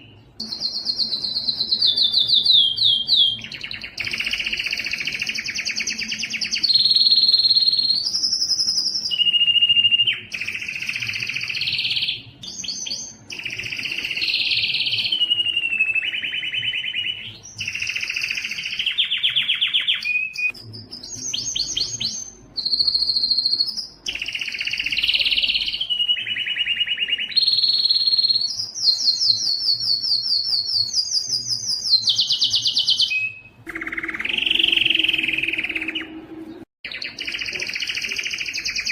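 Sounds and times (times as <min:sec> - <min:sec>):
canary singing trills: 0:00.0 - 0:38.9.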